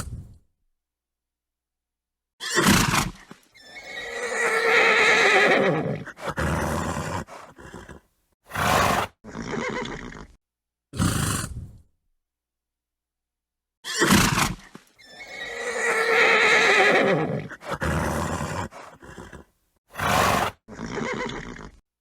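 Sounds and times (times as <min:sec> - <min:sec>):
horse neighing: 0:02.4 - 0:10.4, 0:13.9 - 0:21.8
horse snorting: 0:02.6 - 0:10.4, 0:11.0 - 0:11.8, 0:13.9 - 0:21.8.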